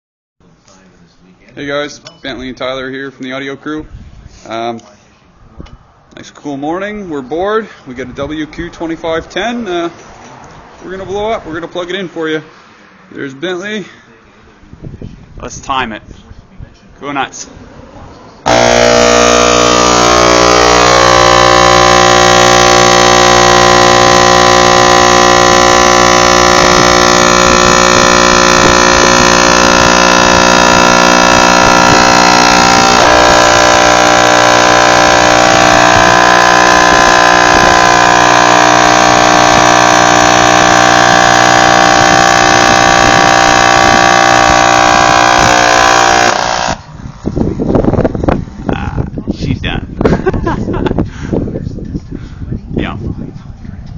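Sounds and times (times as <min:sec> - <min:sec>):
loud mains buzz from subwoofer: 0:18.4 - 0:53.9.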